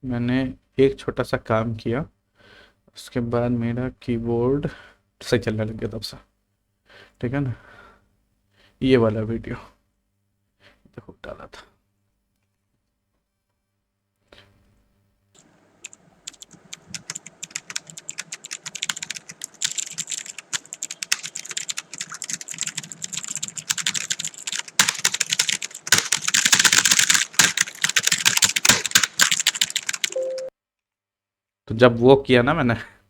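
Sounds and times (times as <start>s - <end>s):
typing on mechanical keyboard: 15.4s - 30.5s.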